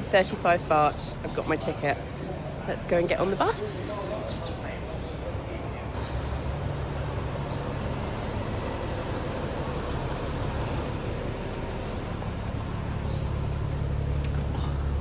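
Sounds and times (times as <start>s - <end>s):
bus engine idling: 3.3s - 15.0s.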